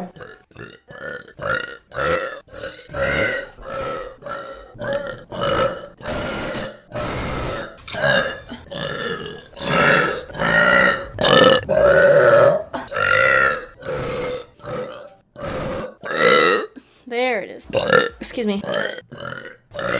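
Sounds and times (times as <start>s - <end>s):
woman burping: 0.0s - 3.6s, 7.6s - 11.7s, 12.4s - 16.8s.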